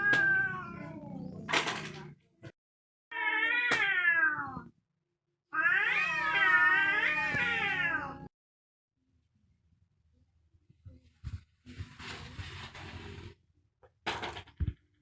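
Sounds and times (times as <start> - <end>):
cat yowling: 0.0 - 1.2, 3.1 - 4.7, 5.5 - 8.3.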